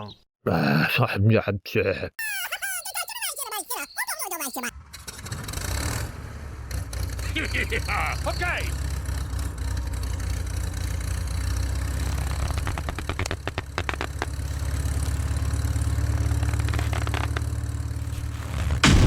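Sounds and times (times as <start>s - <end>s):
idling engine hum: 4.7s - 19.0s
sudden loud burst: 18.3s - 19.0s.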